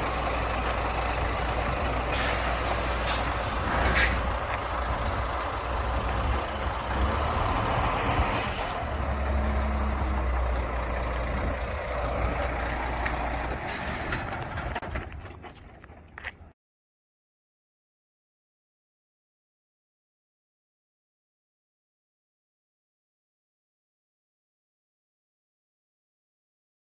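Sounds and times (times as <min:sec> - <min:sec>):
truck diesel engine idling: 0:00.0 - 0:16.3
air brake hisses: 0:02.1 - 0:04.2, 0:08.3 - 0:09.2, 0:13.7 - 0:14.3.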